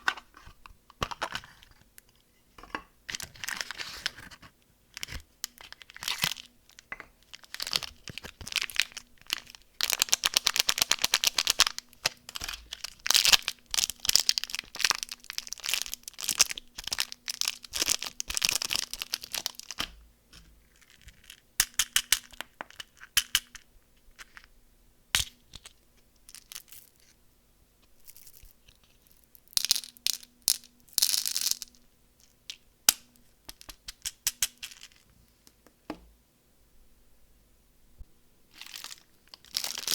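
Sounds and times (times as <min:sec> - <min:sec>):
candy wrappers crinkling: 0:04.9 - 0:19.9, 0:20.6 - 0:23.6, 0:26.3 - 0:27.0, 0:38.5 - 0:39.9.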